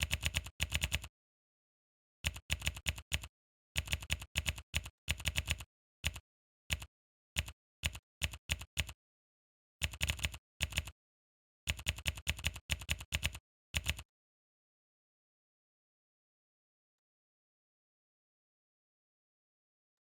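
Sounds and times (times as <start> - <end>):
keyboard typing: 0.0 - 1.1, 2.3 - 9.0, 9.8 - 10.9, 11.7 - 14.0.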